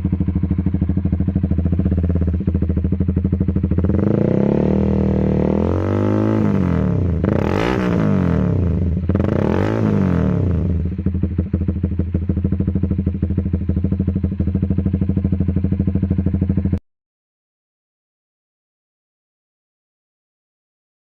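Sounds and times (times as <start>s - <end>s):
motorcycle engine idling: 0.0s - 16.8s
motorcycle engine throttle blips: 0.0s - 16.8s.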